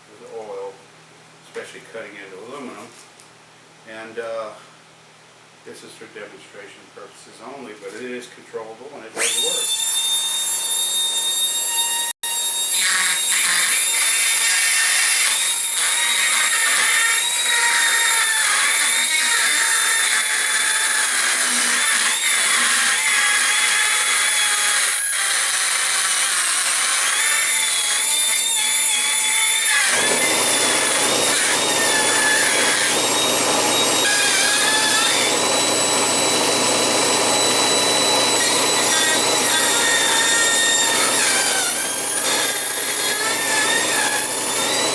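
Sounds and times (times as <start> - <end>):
die grinder high-pitched whine: 9.2 - 44.9.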